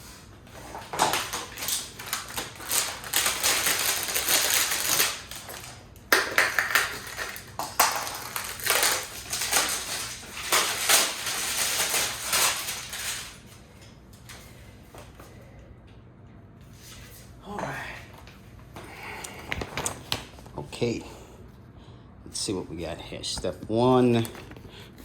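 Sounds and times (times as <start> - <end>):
packaging crackling and rustling: 0.5 - 14.4, 24.0 - 24.8.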